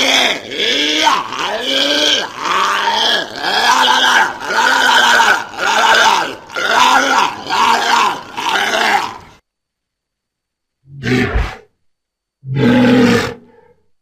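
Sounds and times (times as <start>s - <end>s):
walrus calling: 0.0s - 9.4s.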